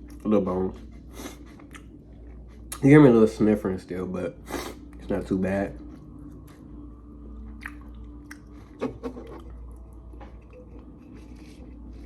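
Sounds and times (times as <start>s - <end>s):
person chewing food: 0.0s - 2.8s, 5.8s - 12.0s.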